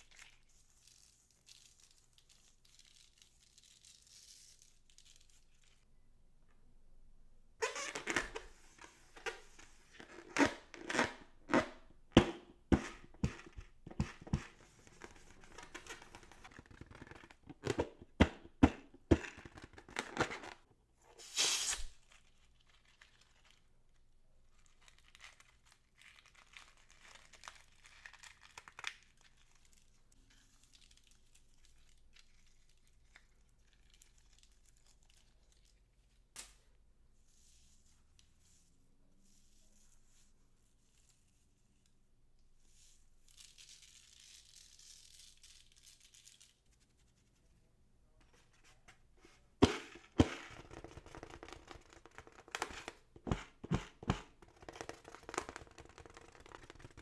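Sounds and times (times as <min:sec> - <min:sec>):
faint handling sounds: 0:00.0 - 0:57.0
loud tearing rip: 0:21.2 - 0:22.0.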